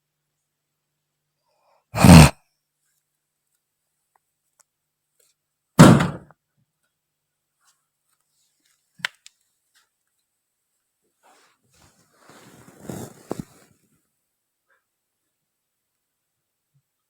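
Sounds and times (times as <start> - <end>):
woman snoring: 2.0 - 2.3.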